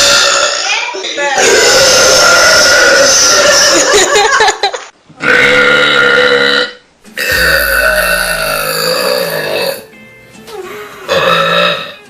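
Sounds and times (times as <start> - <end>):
girl belching: 0.0 - 3.9, 5.2 - 9.8, 11.1 - 12.0.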